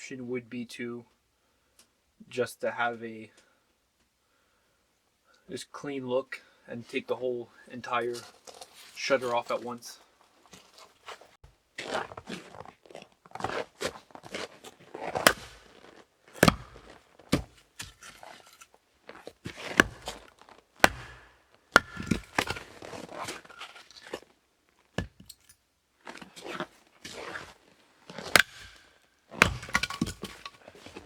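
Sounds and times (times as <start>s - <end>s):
crunching and rustling: 10.5s - 31.0s
sharp knocks: 16.4s - 16.9s, 19.8s - 20.2s, 20.8s - 22.6s, 28.4s - 30.5s.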